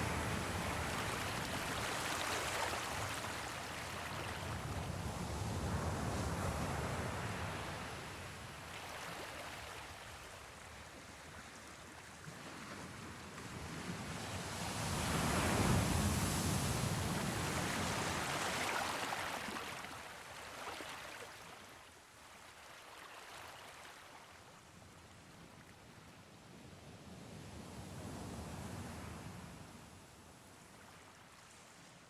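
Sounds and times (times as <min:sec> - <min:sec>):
sea waves washing: 0:00.0 - 0:08.2.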